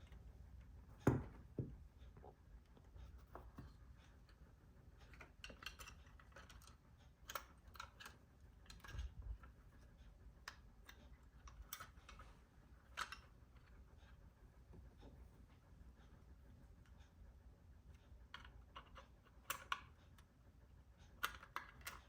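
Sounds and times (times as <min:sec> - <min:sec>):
small hard parts clicking: 0:05.0 - 0:09.6, 0:21.1 - 0:22.0.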